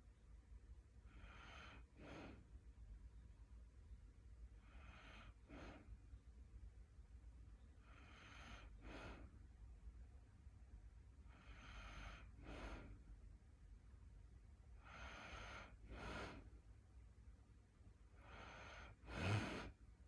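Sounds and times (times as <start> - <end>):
person snoring: 18.5 - 19.7.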